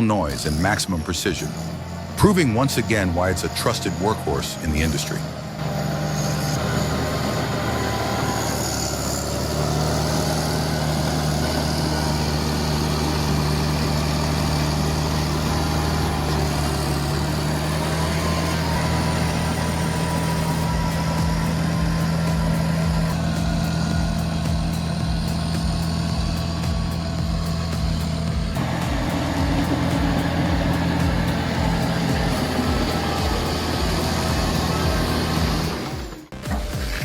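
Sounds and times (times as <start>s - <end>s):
heavy machine engine humming: 0.0s - 37.0s.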